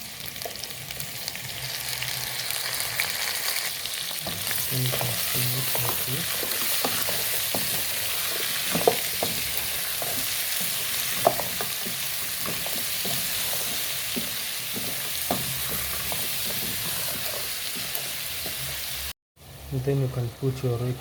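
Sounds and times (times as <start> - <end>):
food sizzling in a pot: 0.0 - 19.2.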